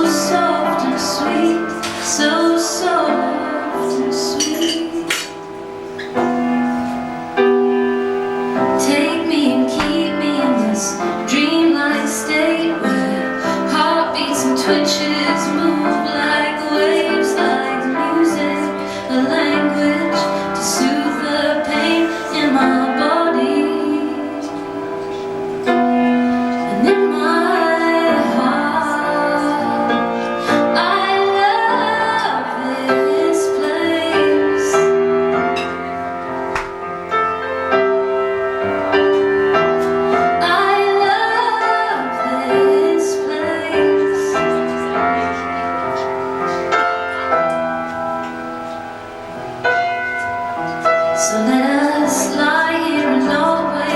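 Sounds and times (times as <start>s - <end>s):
woman singing: 0.0s - 5.4s, 8.6s - 25.4s, 26.2s - 35.8s, 40.1s - 45.6s, 51.1s - 53.9s
piano accompaniment: 0.0s - 53.9s.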